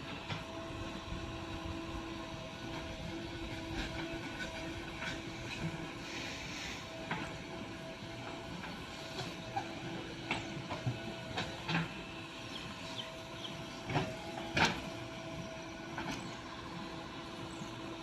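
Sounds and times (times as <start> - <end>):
diesel engine running: 0.0 - 18.0
knocks and clatters of digging: 13.7 - 16.3.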